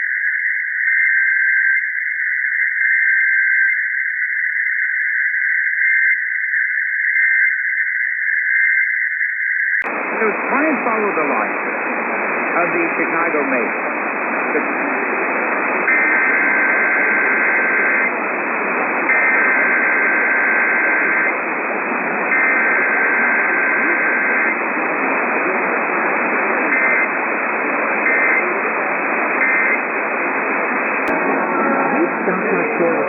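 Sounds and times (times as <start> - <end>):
radio static hiss: 9.8 - 33.0.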